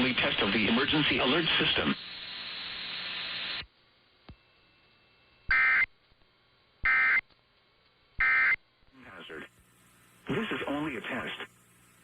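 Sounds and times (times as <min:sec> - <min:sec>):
radio hiss: 0:00.0 - 0:03.7, 0:08.2 - 0:12.0.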